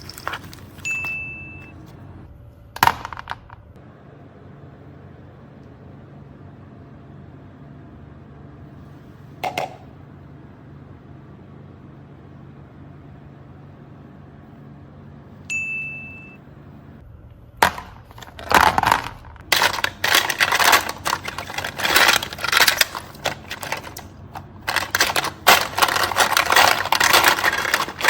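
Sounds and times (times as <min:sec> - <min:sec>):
rustling handling noises: 0:00.0 - 0:02.0, 0:17.6 - 0:28.0
short ding: 0:15.5 - 0:16.4.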